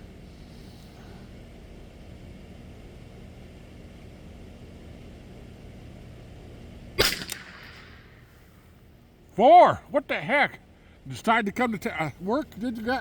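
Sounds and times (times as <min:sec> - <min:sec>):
rifle shot: 0:07.0 - 0:08.2
smaller crack: 0:07.0 - 0:08.2.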